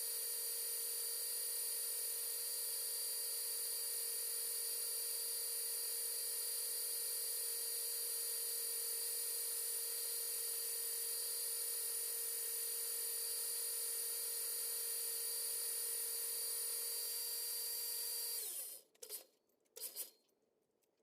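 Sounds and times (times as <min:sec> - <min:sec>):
machine tool whining: 0:18.2 - 0:19.2.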